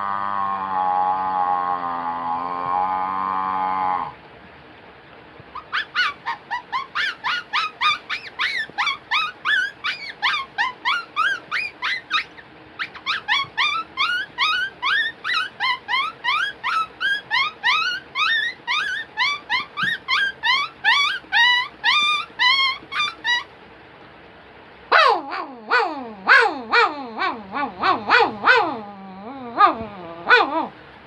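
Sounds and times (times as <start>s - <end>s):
man squeaking like an animal: 5.6s - 23.5s, 24.9s - 30.7s.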